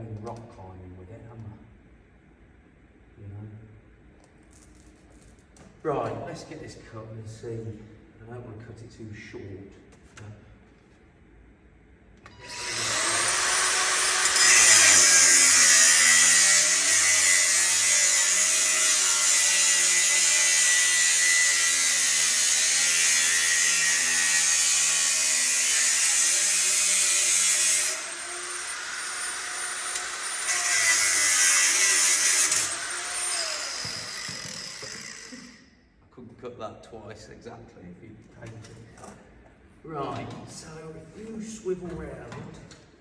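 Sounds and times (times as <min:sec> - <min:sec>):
power tool cutting metal pipe: 0:12.3 - 0:35.6.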